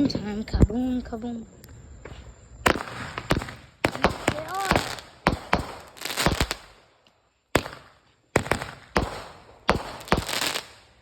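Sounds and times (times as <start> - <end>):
crackling hiss: 0.0 - 11.0
firework bangs: 2.6 - 6.9, 7.5 - 11.0.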